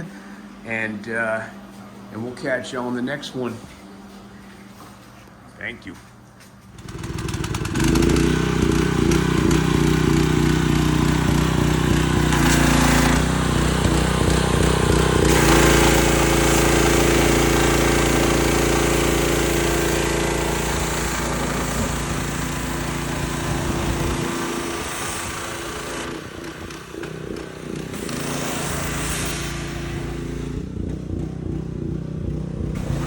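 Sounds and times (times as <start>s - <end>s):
engine running on dyno: 6.7s - 33.0s.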